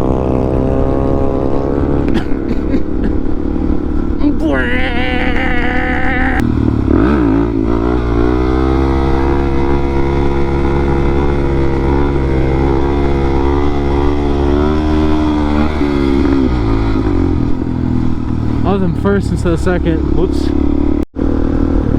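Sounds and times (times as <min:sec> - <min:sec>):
motorcycle engine revving: 0:00.0 - 0:21.9.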